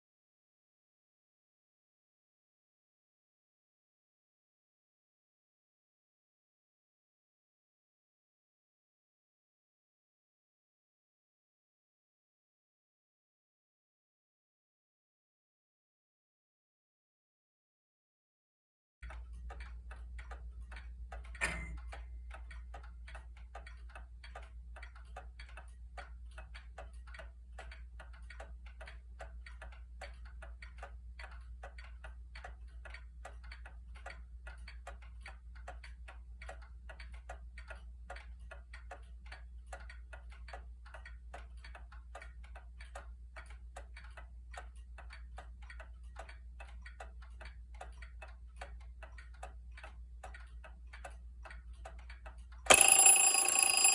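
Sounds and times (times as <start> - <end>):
mantel clock ticking: 19.0 - 53.9.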